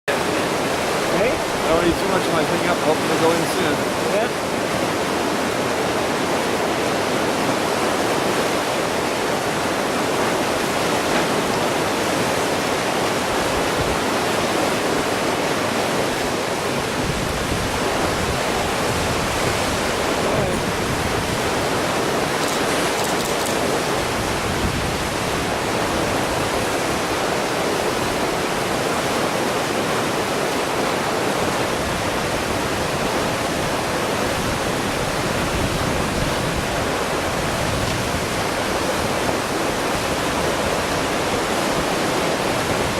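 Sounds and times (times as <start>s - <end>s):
river rushing through rapids: 0.1s - 42.9s.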